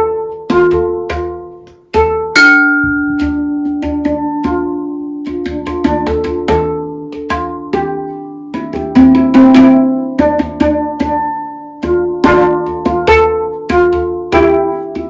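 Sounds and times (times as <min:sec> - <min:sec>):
handpan notes ringing: 0:02.0 - 0:15.0.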